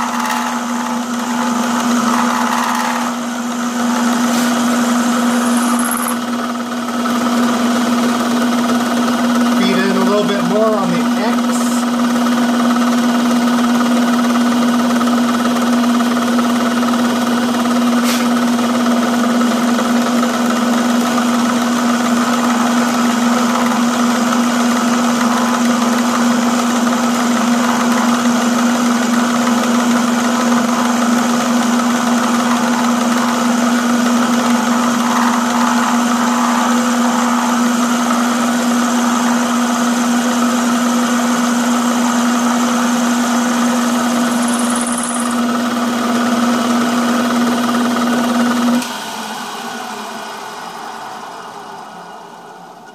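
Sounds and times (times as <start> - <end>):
machine tool cutting metal: 0.0 - 6.4, 19.3 - 46.0.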